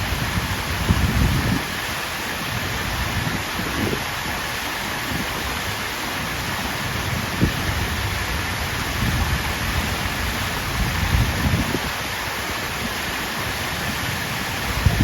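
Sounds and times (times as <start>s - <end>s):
wind thumps on microphone: 0.0s - 4.4s, 8.8s - 12.0s, 13.9s - 15.0s
water fountain splashing: 0.0s - 15.0s.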